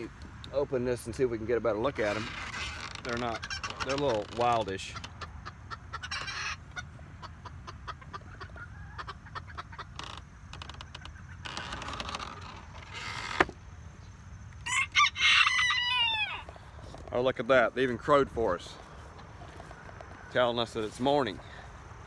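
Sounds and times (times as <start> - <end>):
rooster crowing: 14.6 - 16.6.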